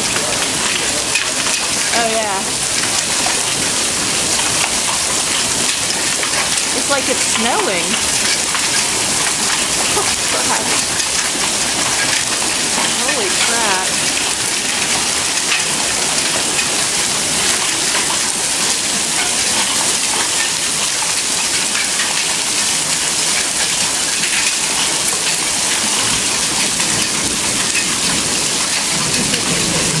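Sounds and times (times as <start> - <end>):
hail hitting surfaces: 0.0 - 30.0.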